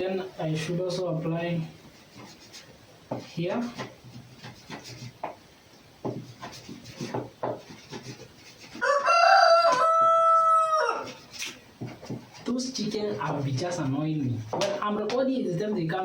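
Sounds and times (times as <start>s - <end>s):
faint clicks and taps: 1.9s - 5.4s, 11.3s - 12.5s
rooster crowing: 8.8s - 11.2s.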